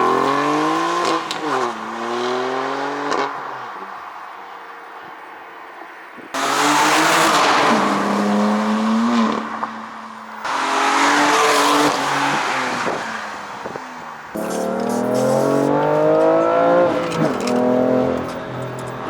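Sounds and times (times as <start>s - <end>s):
car engine accelerating hard: 10.5s - 19.0s.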